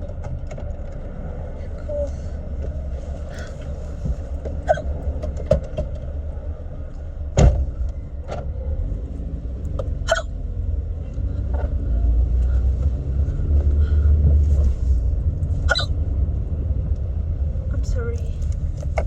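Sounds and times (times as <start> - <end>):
car low rumble: 0.0 - 19.0
woman hiccuping: 4.6 - 4.9, 10.0 - 10.4, 15.7 - 15.9.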